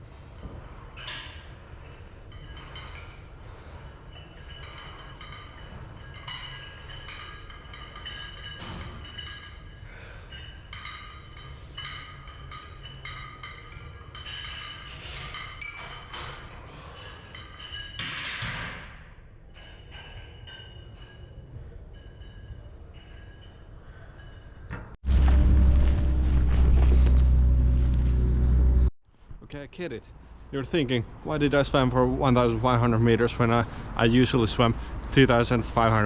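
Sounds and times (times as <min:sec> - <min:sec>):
low rumble: 0:25.0 - 0:28.9.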